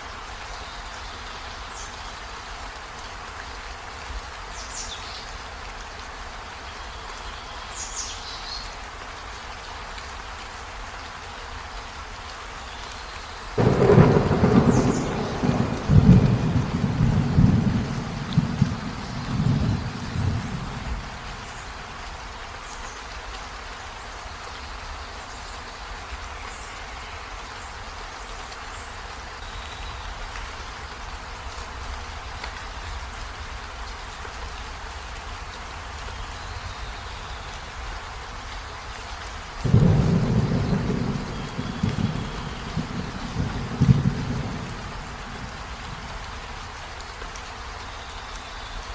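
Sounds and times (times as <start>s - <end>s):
rainfall: 0.0s - 48.9s
thunder rolling: 13.6s - 21.2s.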